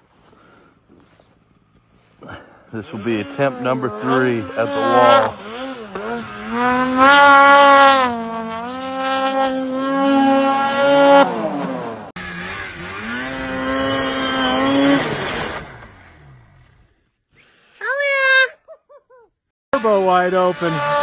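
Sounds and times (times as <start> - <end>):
snowmobile engine revving: 0.4 - 18.3, 19.8 - 21.0.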